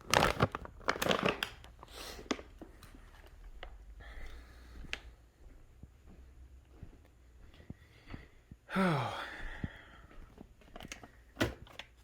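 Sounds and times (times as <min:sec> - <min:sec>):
plastic bag crinkling: 0:00.0 - 0:02.9.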